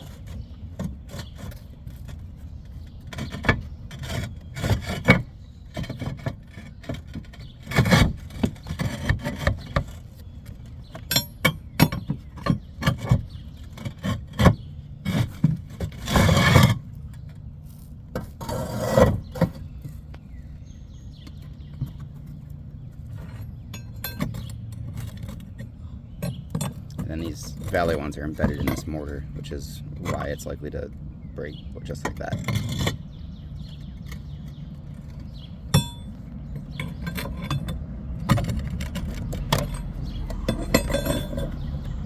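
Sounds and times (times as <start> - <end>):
roof tiles scraping: 0.0 - 31.0, 31.8 - 42.0
roof tiles clinking and knocking: 33.8 - 42.0.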